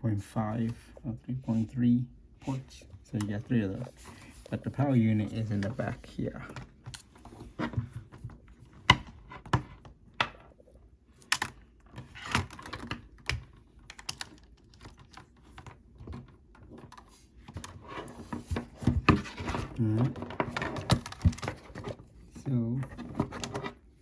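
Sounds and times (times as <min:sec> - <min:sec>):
cables rustling: 0:02.4 - 0:09.8.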